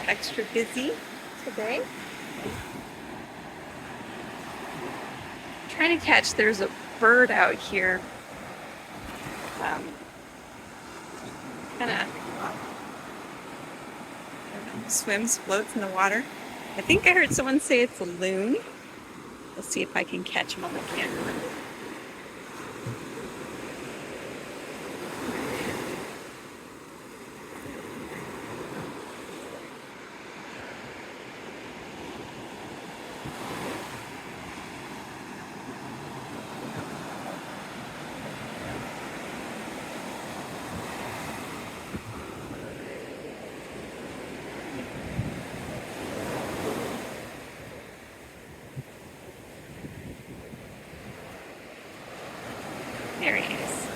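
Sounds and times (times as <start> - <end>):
wind buffeting microphone: 0.0 - 17.9, 32.2 - 53.9
ocean surf washing onto beach: 0.0 - 53.9.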